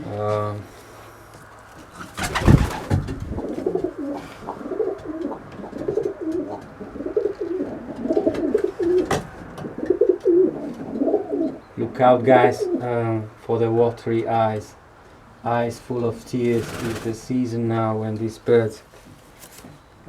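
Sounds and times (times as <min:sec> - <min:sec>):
pigeons cooing: 0:00.0 - 0:13.7, 0:16.1 - 0:17.3
loud thump: 0:02.5 - 0:03.4.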